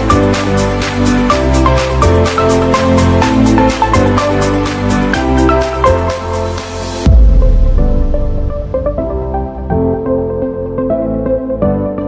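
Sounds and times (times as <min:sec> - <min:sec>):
electronic music: 0:00.0 - 0:12.0.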